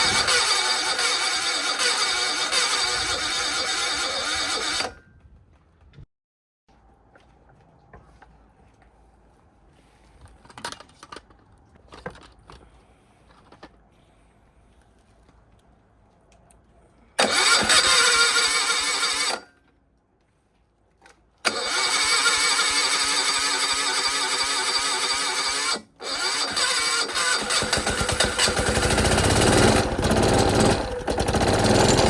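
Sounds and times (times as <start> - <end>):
high-speed power tool running: 0.0 - 5.0, 21.5 - 32.0.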